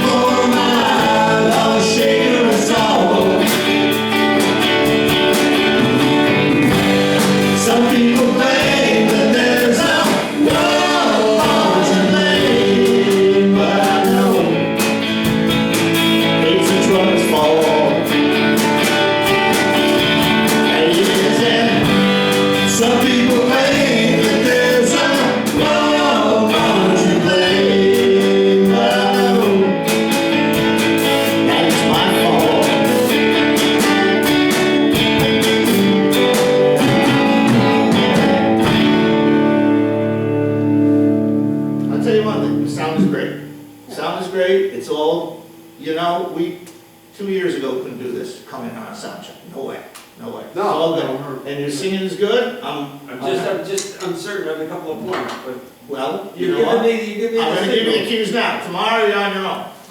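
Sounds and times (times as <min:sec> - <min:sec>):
several voices singing together: 0:00.0 - 0:03.9, 0:07.2 - 0:14.7, 0:20.6 - 0:29.9, 0:31.3 - 0:33.2
guitars playing: 0:00.0 - 0:47.1.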